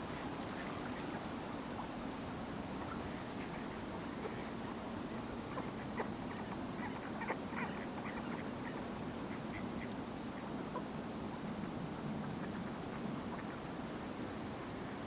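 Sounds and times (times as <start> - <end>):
wild birds calling: 5.4 - 10.9.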